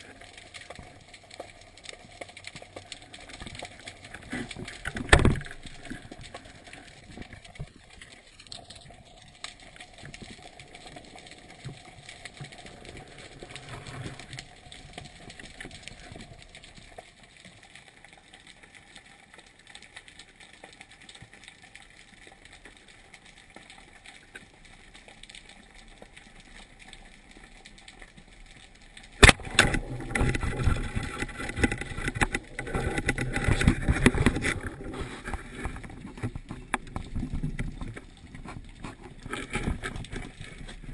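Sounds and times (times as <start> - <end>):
faint crackling and ticks: 0.0 - 40.9
muffled underwater ambience: 0.0 - 40.9
rough splashing and knocking: 29.2 - 37.7.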